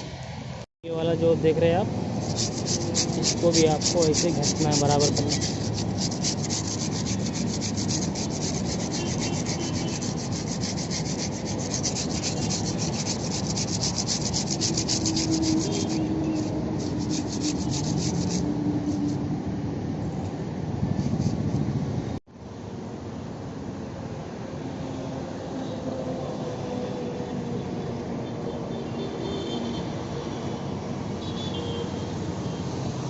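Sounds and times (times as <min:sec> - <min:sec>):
sandpaper rubbing on metal: 0:01.9 - 0:19.2, 0:20.9 - 0:21.5.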